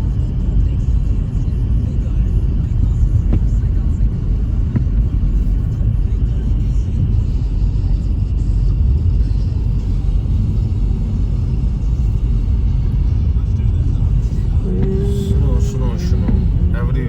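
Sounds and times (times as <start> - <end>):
car driving on snowy road: 0.0 - 17.0.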